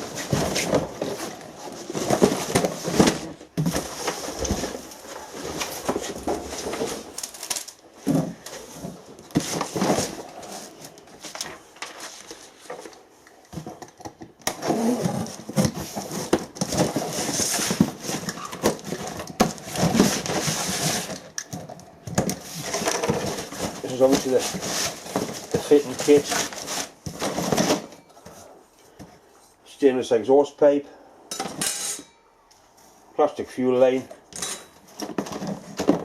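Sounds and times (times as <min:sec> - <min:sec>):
packaging crinkling: 0:00.0 - 0:07.8.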